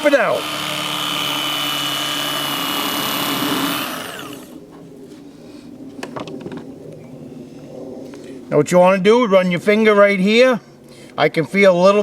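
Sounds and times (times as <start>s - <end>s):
electric knife motor whine: 0.0s - 4.6s.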